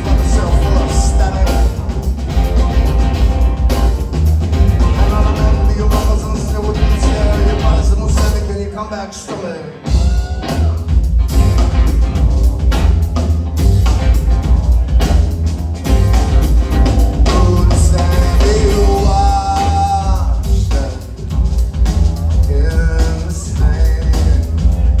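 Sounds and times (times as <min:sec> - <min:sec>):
person singing: 0:00.0 - 0:02.2, 0:04.7 - 0:10.8, 0:17.3 - 0:21.2, 0:22.4 - 0:25.0
live rock band playing: 0:00.0 - 0:25.0.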